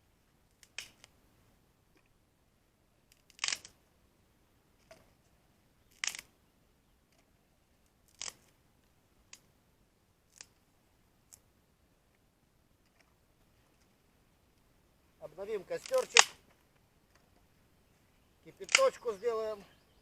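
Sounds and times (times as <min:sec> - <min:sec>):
sharp snaps: 0:00.5 - 0:01.2, 0:03.1 - 0:03.8, 0:05.9 - 0:06.3, 0:08.1 - 0:08.6, 0:10.3 - 0:10.6, 0:15.7 - 0:16.8, 0:18.5 - 0:19.3.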